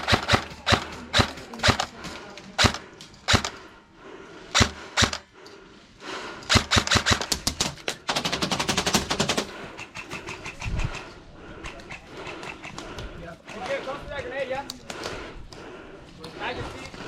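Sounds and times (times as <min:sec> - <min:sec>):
airsoft guns firing: 0:00.0 - 0:03.6, 0:04.5 - 0:05.2, 0:06.5 - 0:11.0.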